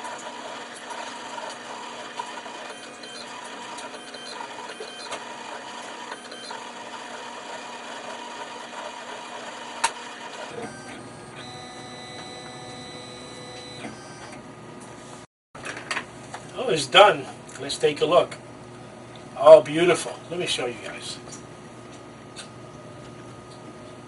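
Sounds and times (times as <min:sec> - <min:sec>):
engraving machine motors whirring: 0:00.1 - 0:14.3
steady hum: 0:10.5 - 0:15.3.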